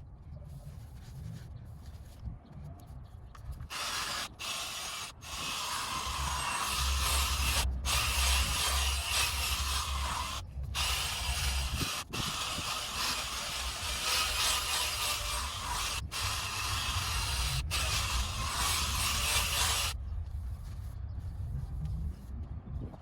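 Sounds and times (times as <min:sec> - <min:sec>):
power drill motor hum: 0:03.7 - 0:20.0
sanding disc rasping on plastic: 0:03.7 - 0:20.0.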